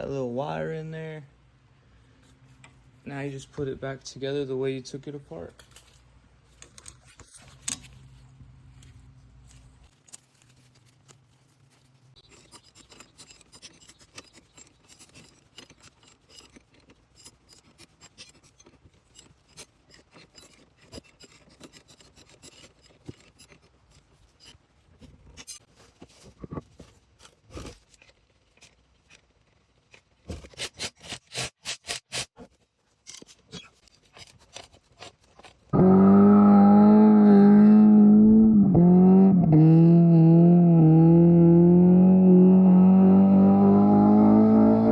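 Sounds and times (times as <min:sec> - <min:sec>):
metallic clicks and scrapes of tools: 0:05.3 - 0:35.7.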